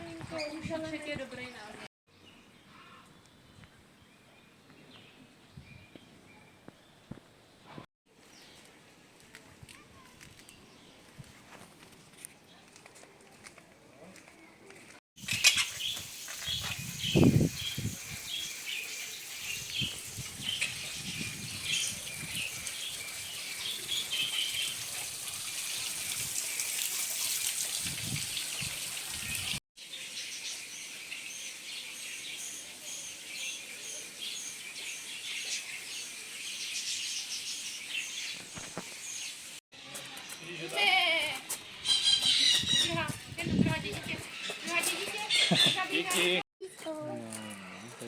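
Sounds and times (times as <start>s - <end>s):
small birds chirping: 14.4s - 26.8s, 29.2s - 40.9s, 41.5s - 46.3s.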